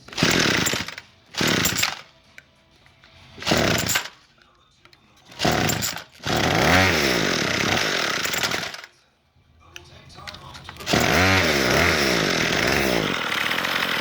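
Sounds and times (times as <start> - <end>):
string trimmer engine running: 0.0 - 2.1, 3.4 - 4.1, 5.3 - 8.9, 10.7 - 14.0
starter cord pulls: 0.0 - 4.2, 4.9 - 8.9, 10.2 - 14.0.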